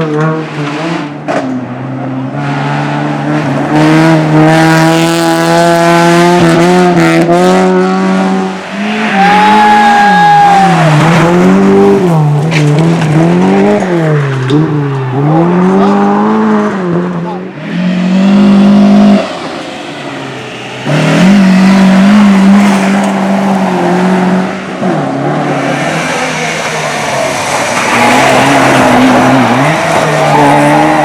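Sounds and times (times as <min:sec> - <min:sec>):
race car engine revving: 0:00.0 - 0:31.0
tire squeal: 0:08.7 - 0:12.1, 0:25.7 - 0:31.0.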